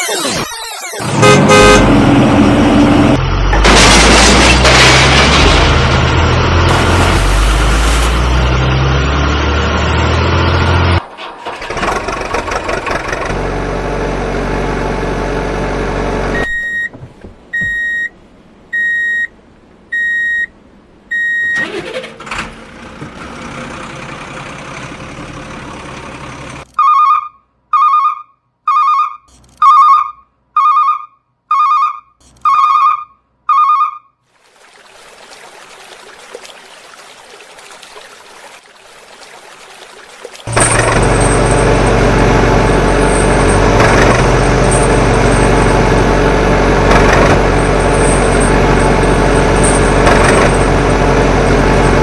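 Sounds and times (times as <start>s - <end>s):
electronic beeps: 0.0s - 1.4s
vehicle engine running: 40.5s - 52.0s.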